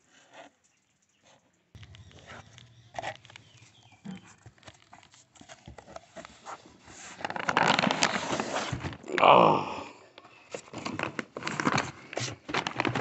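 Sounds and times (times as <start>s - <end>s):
clicks: 1.8s - 6.3s
packaging crinkling and tearing: 1.8s - 9.2s, 10.6s - 13.0s.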